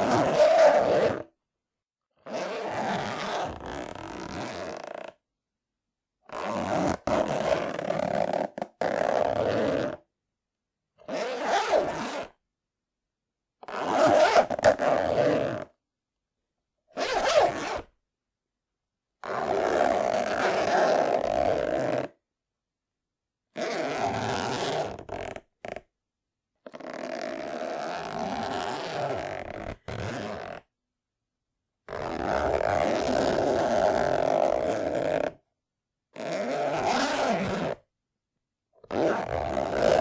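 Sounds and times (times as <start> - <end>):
zipper opening and closing: 0.0 - 1.3, 2.2 - 5.2, 6.3 - 10.0, 11.1 - 12.4, 13.6 - 15.8, 17.0 - 17.9, 19.2 - 22.2, 23.5 - 25.9, 26.6 - 30.7, 31.9 - 35.4, 36.1 - 37.8, 38.8 - 40.0.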